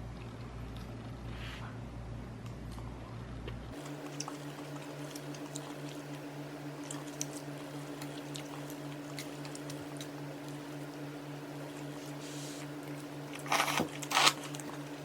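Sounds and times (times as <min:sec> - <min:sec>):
pulsing low hum: 0:00.0 - 0:15.0
food being chewed: 0:03.7 - 0:15.0.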